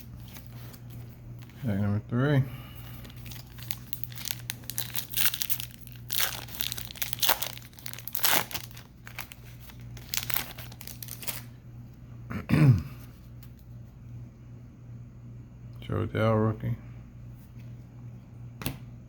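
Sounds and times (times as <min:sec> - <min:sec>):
foil wrapper tearing and crinkling: 0:03.0 - 0:11.6.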